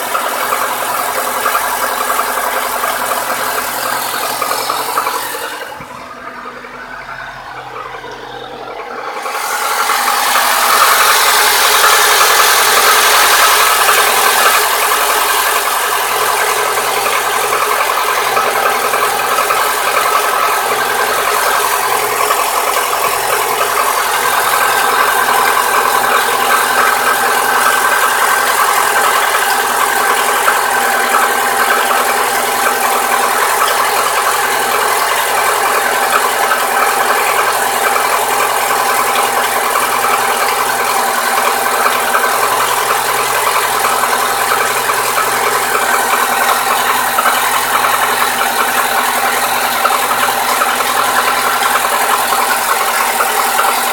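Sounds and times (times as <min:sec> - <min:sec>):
car engine running: 0:00.0 - 0:53.9
fast ticking engine knock: 0:00.0 - 0:53.9.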